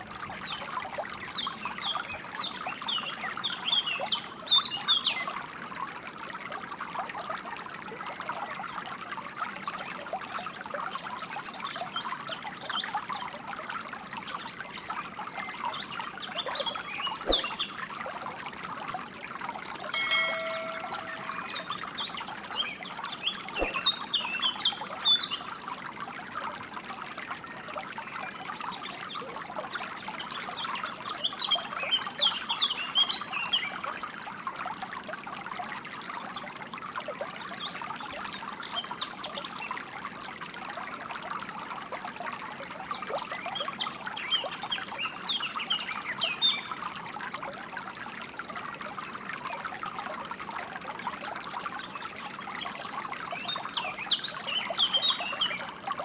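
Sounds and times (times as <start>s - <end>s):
water trickling and babbling: 0.0s - 56.0s
songbirds chirping: 15.7s - 17.8s, 19.6s - 25.4s, 51.8s - 55.8s.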